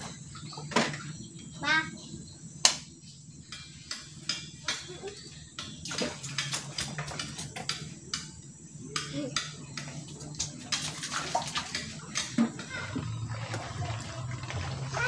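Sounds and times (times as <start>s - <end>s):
low steady hum: 0.0s - 15.0s
water splashing and sloshing: 5.8s - 7.6s, 10.1s - 15.0s.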